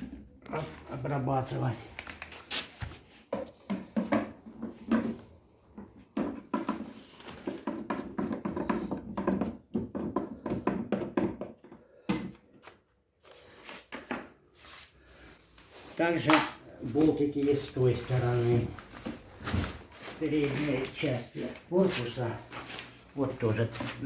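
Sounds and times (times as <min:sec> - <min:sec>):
plastic parts being handled: 0:00.5 - 0:14.4.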